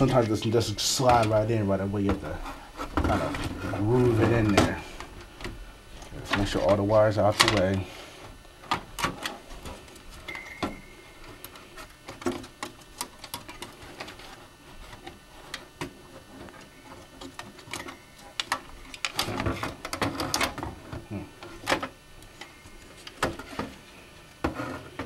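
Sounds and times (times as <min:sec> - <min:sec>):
computer parts clicking and knocking: 0:12.0 - 0:14.2, 0:17.2 - 0:21.0.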